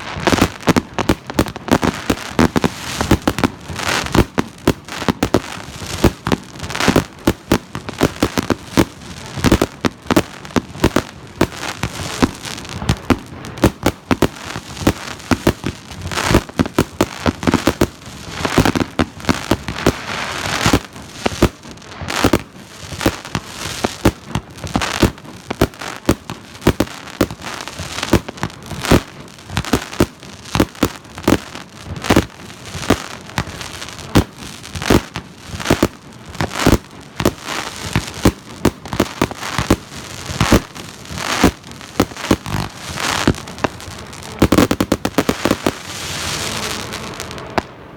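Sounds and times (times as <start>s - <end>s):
fireworks launching and bursting: 0.0s - 47.9s.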